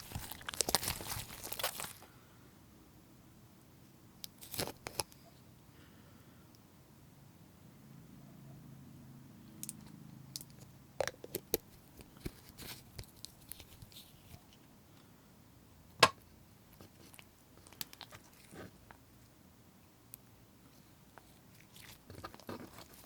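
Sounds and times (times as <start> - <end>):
slime popping and crackling: 0.0 - 2.0.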